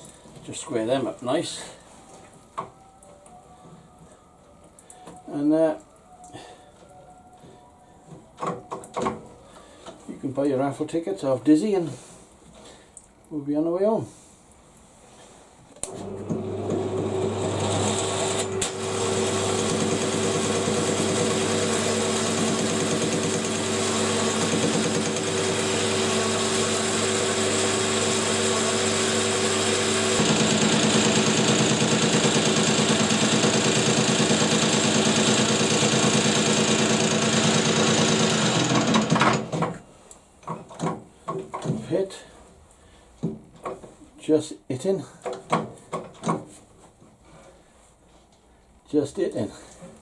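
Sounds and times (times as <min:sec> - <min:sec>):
metal lathe cutting: 0:16.0 - 0:39.5.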